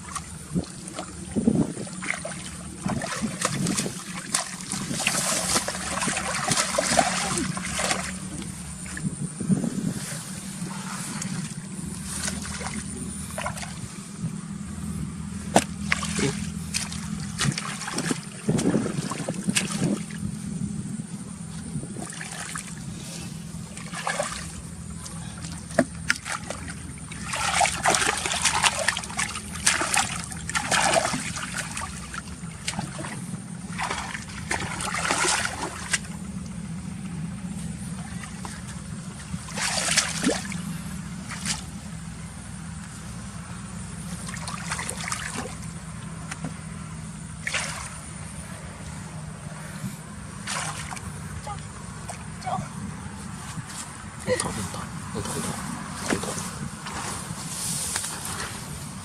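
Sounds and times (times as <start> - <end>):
water slaps: 0.0 - 9.1, 10.6 - 13.9, 15.5 - 20.2, 23.7 - 36.6, 38.0 - 42.0, 44.2 - 46.6, 47.3 - 48.2, 50.4 - 52.7, 56.0 - 57.1
low engine hum: 0.0 - 59.0
water splashing and sloshing: 0.0 - 59.0.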